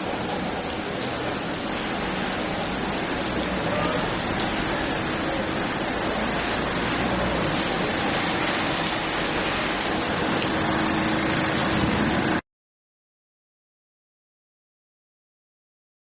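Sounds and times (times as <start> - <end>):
steady rain falling: 0.0 - 12.4.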